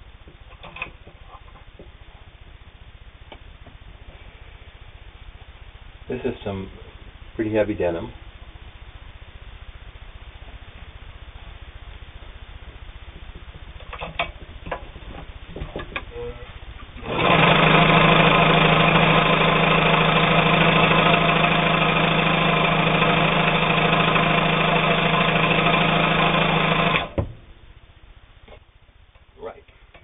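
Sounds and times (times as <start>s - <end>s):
sewing machine running: 17.0s - 27.2s.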